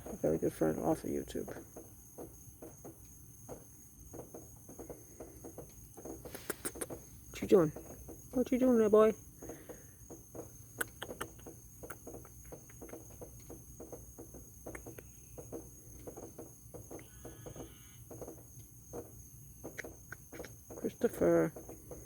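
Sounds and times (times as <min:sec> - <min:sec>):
insects chirring: 0:00.0 - 0:22.0.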